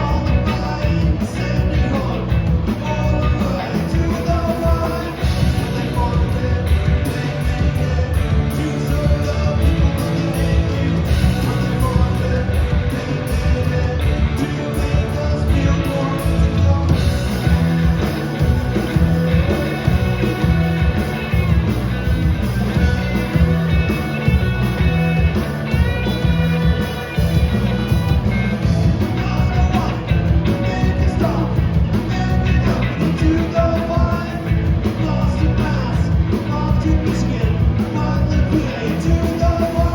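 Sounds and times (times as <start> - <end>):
person singing: 0.0 - 20.5, 28.6 - 39.9
punk rock band playing live: 0.0 - 39.9.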